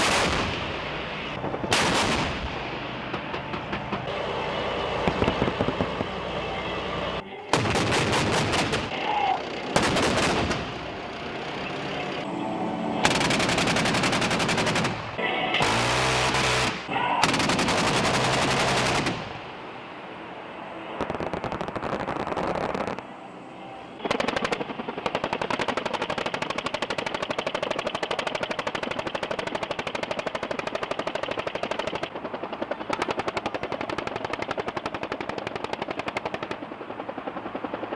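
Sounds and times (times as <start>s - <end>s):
automatic weapons fire: 0.0s - 0.9s, 1.7s - 2.8s, 7.5s - 11.0s, 13.0s - 19.5s, 24.0s - 32.1s.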